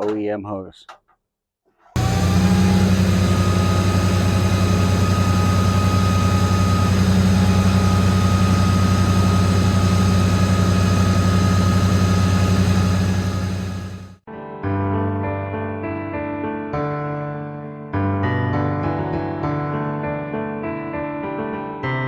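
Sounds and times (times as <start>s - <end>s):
machine motor humming: 2.0s - 14.2s.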